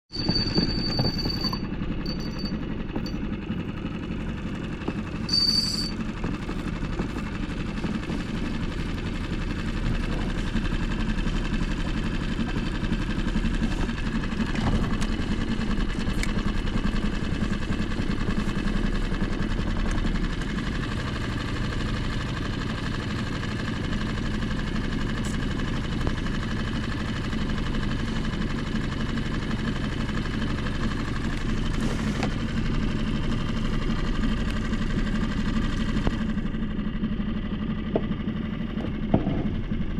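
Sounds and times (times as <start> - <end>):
brief high-pitched tone: 0.1 - 2.6, 5.3 - 6.0
engine running steadily: 0.1 - 39.9.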